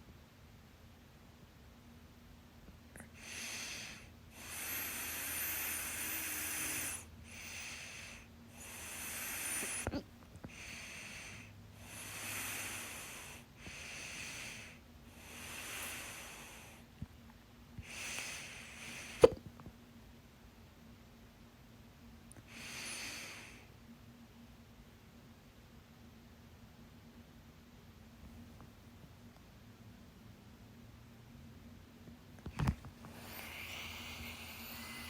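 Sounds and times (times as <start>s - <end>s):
person breathing heavily: 3.0s - 16.9s, 33.0s - 35.0s.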